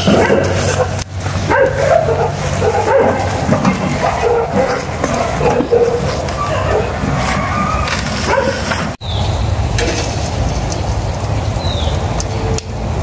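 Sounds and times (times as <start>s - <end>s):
steady low rumble: 0.0s - 8.2s
dog whimpering: 4.1s - 8.6s.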